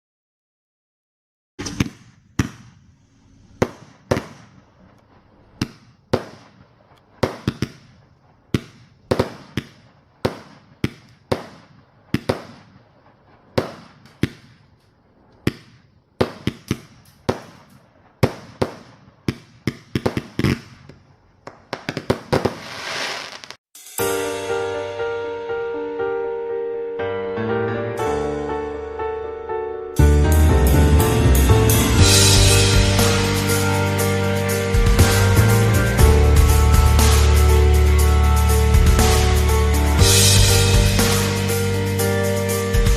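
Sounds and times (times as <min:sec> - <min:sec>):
music: 0:23.8 - 0:42.9
sharp loud bangs: 0:31.5 - 0:37.7, 0:38.8 - 0:42.0.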